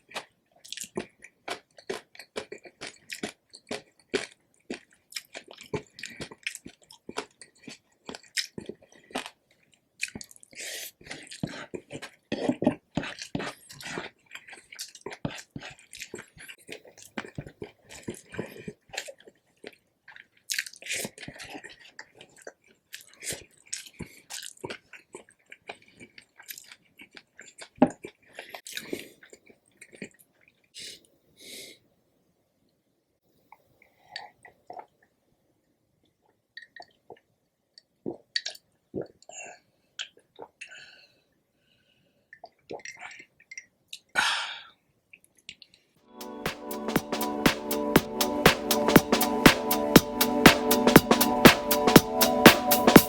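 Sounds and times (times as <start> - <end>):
chewing crispy pork skin: 0.0 - 30.2.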